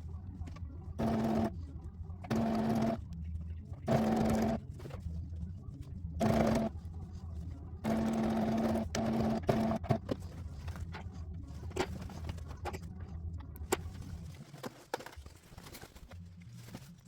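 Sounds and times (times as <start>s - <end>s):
electric sewing machine running: 1.0s - 1.5s, 2.3s - 3.0s, 3.9s - 4.6s, 6.2s - 6.7s, 7.8s - 10.0s.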